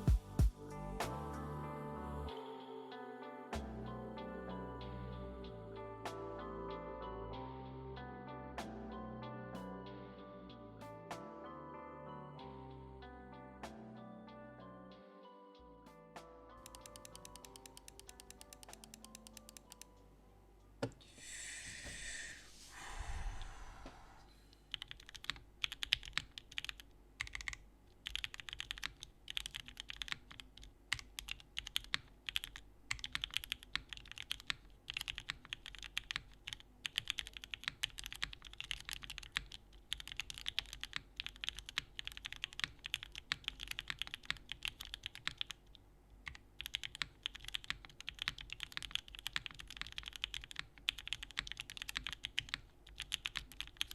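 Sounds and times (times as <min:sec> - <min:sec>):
fast typing on mechanical keyboard: 0:16.6 - 0:19.9, 0:24.7 - 0:45.7, 0:46.3 - 0:53.9.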